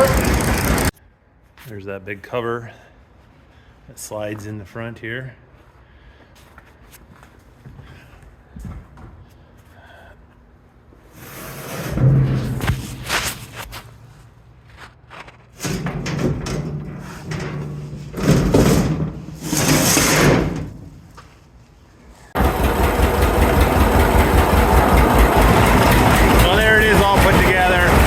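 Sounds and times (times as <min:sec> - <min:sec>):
tractor engine running: 0:00.0 - 0:00.9, 0:22.4 - 0:28.0
metal knocks and scrapes: 0:11.4 - 0:14.2, 0:14.8 - 0:21.2, 0:22.3 - 0:28.0.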